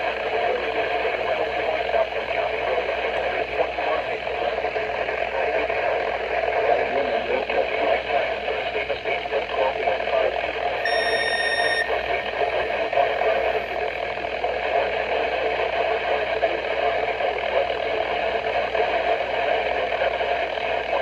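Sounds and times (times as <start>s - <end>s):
radio static hiss: 0.0s - 21.0s
electronic beep: 10.8s - 12.0s.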